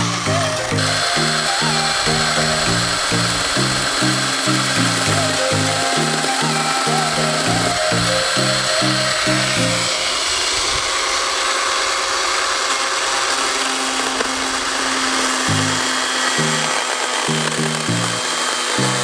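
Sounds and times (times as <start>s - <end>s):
background music with pulsing bass: 0.0s - 9.9s, 15.5s - 18.2s
chainsaw running: 0.0s - 19.0s.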